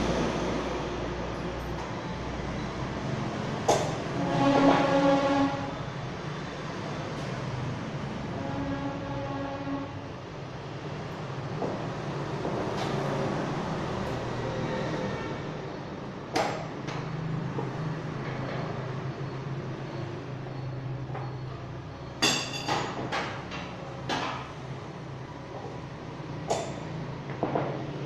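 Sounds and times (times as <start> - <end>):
sharp metallic knocks: 22.2 - 24.5.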